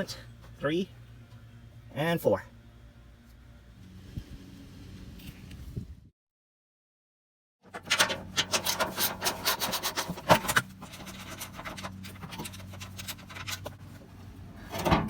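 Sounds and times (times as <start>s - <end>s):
clicks and scraping of cover: 7.7s - 13.8s.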